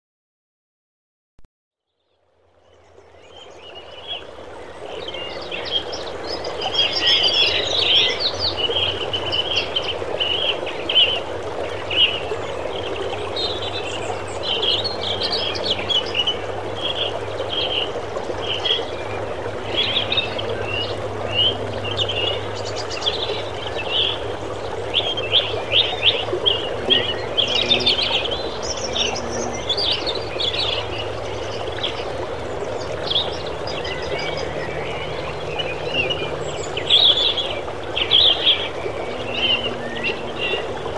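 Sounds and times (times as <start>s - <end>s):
brook running: 2.0s - 40.9s
birds chirping: 4.8s - 40.9s
fly buzzing: 26.7s - 30.0s.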